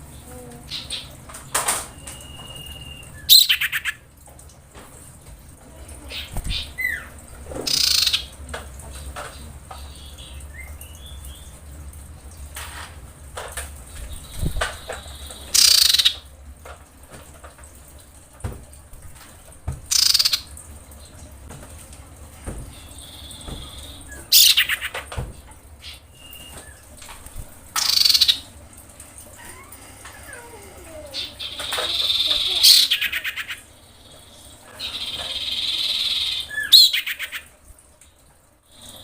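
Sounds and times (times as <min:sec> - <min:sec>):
bird harsh rasping calls: 0:06.1 - 0:08.3, 0:15.0 - 0:16.2, 0:22.7 - 0:25.0, 0:27.8 - 0:28.5, 0:29.4 - 0:33.7.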